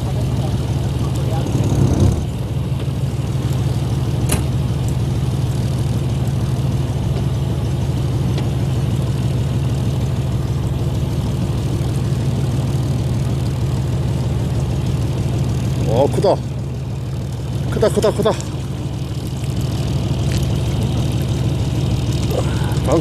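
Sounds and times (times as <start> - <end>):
boat engine idling: 0.0 - 23.0.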